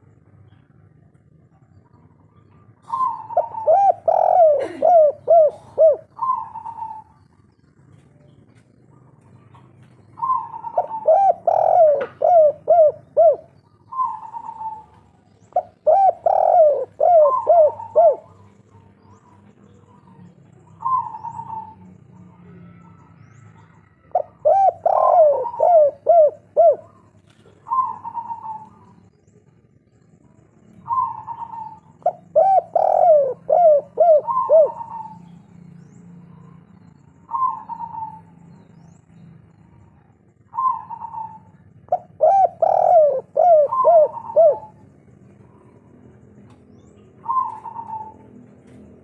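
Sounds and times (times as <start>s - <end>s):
dove cooing: 1.5s - 8.1s, 8.8s - 29.7s, 30.7s - 35.5s, 36.7s - 38.7s, 39.8s - 49.0s.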